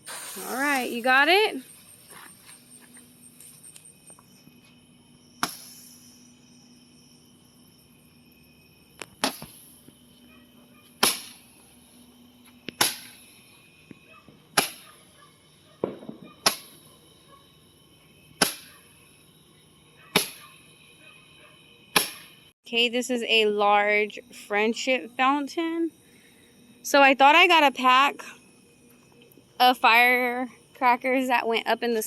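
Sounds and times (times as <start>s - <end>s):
handheld firework pops: 5.4s - 6.0s, 9.0s - 10.0s, 11.0s - 11.5s, 12.6s - 13.3s, 13.9s - 15.0s, 15.8s - 17.0s, 18.4s - 18.9s, 20.2s - 20.6s, 21.9s - 22.4s.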